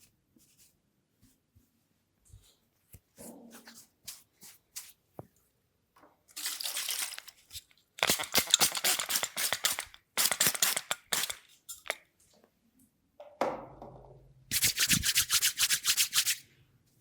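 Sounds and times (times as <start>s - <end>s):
hands rubbing oil into hair: 14.5s - 16.4s.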